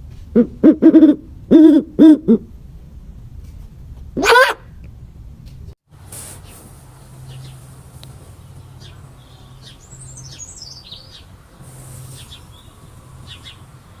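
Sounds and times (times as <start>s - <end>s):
bird chirping: 6.4s - 14.0s.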